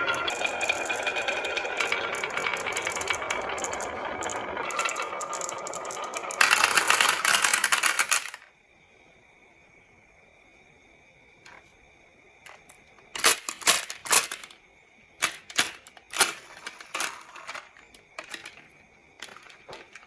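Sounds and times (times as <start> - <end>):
marbles clattering down wooden run: 0.0 - 8.4, 15.2 - 18.6, 19.2 - 20.0.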